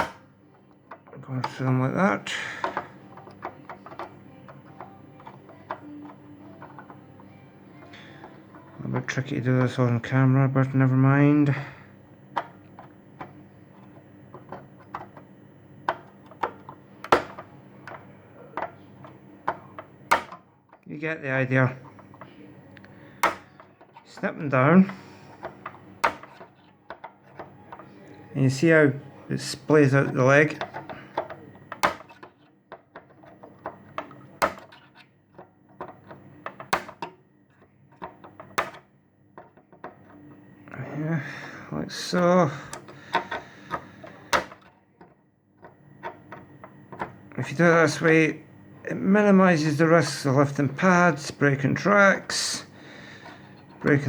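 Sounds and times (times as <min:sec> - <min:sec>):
cutters snipping chip pins: 0:15.9 - 0:20.4, 0:22.0 - 0:27.9, 0:29.4 - 0:32.3.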